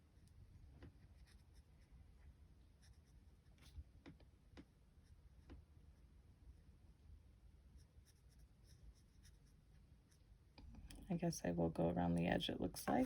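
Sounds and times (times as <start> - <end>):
marker scratching on paper: 1.2 - 1.8, 7.8 - 10.2.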